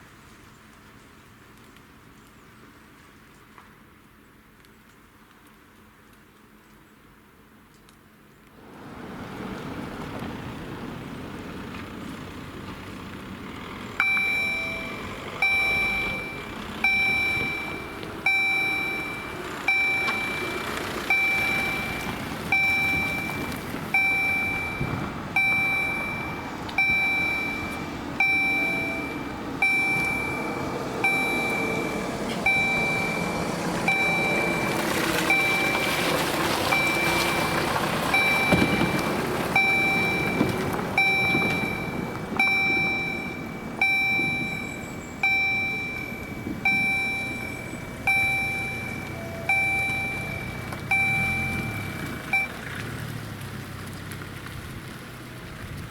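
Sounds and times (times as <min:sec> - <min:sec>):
rushing vehicle noise: 0:00.0 - 0:55.9
level crossing warning bell: 0:14.0 - 0:52.5.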